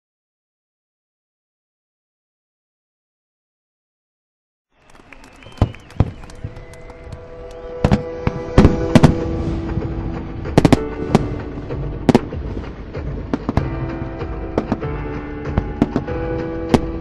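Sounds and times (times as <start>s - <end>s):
music: 4.7s - 17.0s
fireworks bursting: 4.8s - 13.9s, 14.5s - 17.0s.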